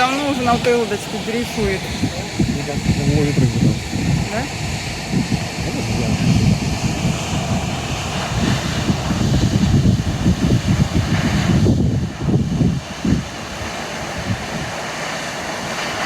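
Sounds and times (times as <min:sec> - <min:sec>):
waterfall rushing: 0:00.0 - 0:16.0
wind buffeting microphone: 0:00.0 - 0:16.0.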